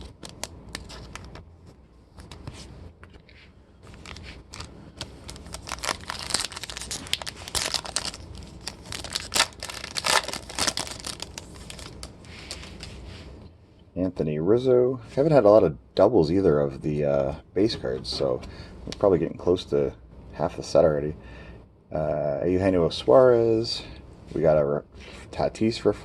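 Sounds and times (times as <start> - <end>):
foil wrapper crinkling: 0.0 - 1.4, 3.9 - 12.9.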